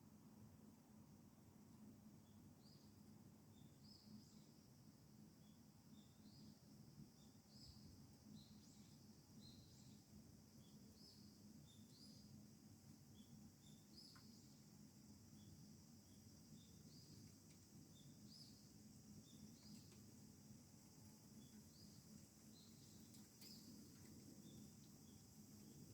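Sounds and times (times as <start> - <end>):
faint bird chirping: 5.4 - 20.3, 21.0 - 25.9.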